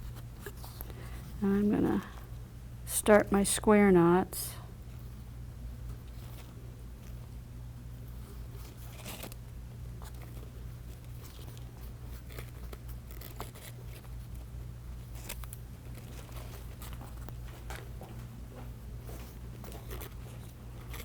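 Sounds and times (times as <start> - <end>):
steady low hum: 0.0 - 21.0
cord rustling and scraping: 10.0 - 14.4, 19.1 - 21.0.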